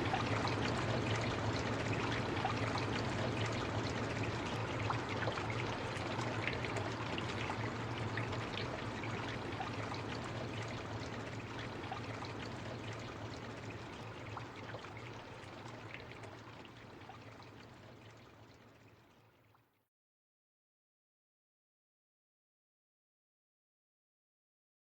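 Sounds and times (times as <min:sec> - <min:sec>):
steady rain: 0:00.0 - 0:13.9.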